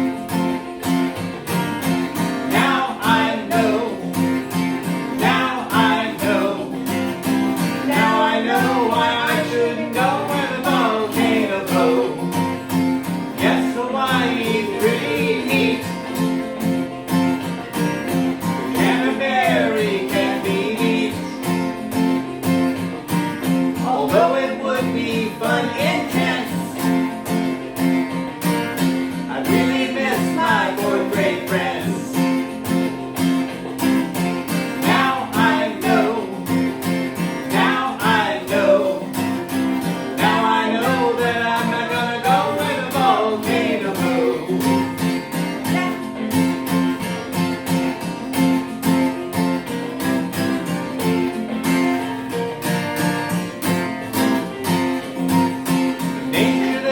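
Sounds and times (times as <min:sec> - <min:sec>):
acoustic guitar strumming: 0:00.0 - 0:56.9
person singing: 0:02.4 - 0:12.6, 0:13.2 - 0:16.2, 0:18.6 - 0:21.8, 0:23.8 - 0:26.9, 0:29.2 - 0:32.5, 0:34.7 - 0:45.0, 0:45.6 - 0:46.2, 0:56.2 - 0:56.9.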